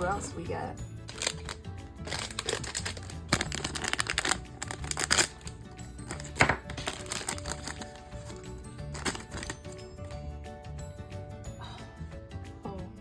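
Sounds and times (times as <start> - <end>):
background music: 0.0 - 13.0
plastic packet crinkling and tearing: 1.1 - 9.8.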